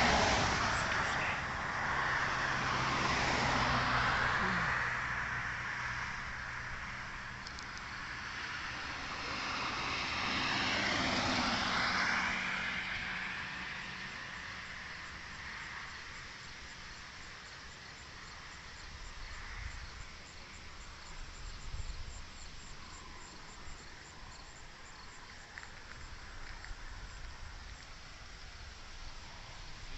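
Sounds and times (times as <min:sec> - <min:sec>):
vehicle passing by: 0:00.0 - 0:16.2.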